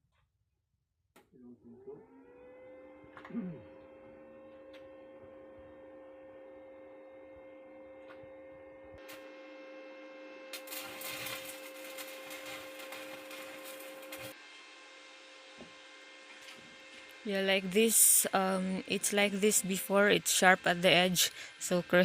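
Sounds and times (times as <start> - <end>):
electric grinder humming: 1.7 - 22.0
grinder disc grinding steel: 10.6 - 14.4.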